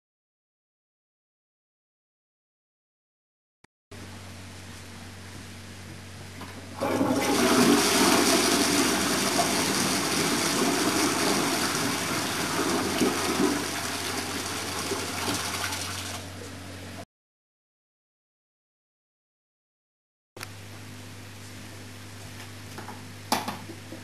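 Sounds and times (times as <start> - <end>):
steady low hum: 3.9 - 7.2
toilet flushing: 6.7 - 16.3.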